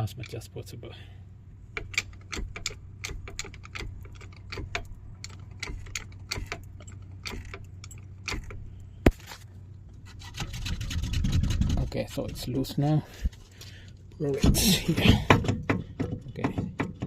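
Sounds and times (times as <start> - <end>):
steady low hum: 0.0 - 16.0
metallic clicking of tools: 1.8 - 8.9.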